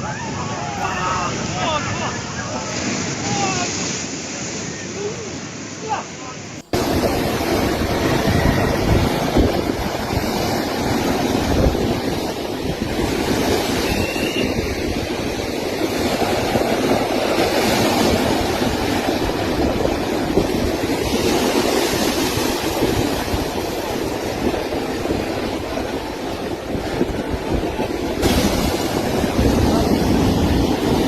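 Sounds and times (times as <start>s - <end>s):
rushing water: 0.0s - 31.0s
wind buffeting microphone: 6.6s - 31.0s.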